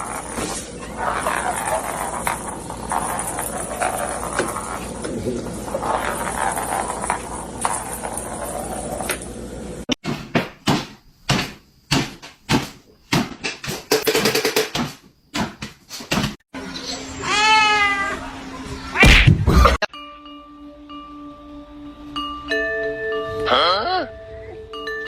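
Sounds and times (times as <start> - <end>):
sharp knocks and bangs: 10.0 - 16.4.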